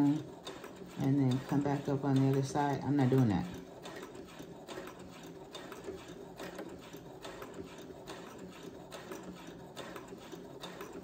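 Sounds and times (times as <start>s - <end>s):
needle ticks: 0.0s - 7.5s
sewing machine motor hum: 0.0s - 11.0s.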